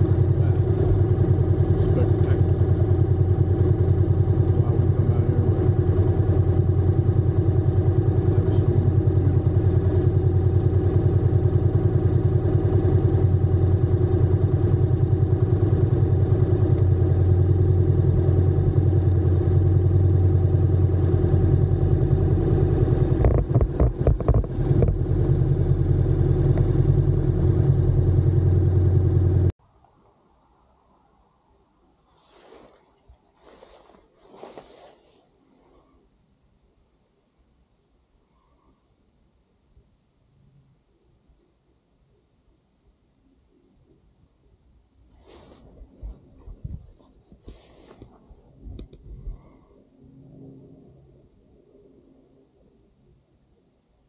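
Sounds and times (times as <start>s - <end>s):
motorcycle engine running: 0.0s - 29.5s.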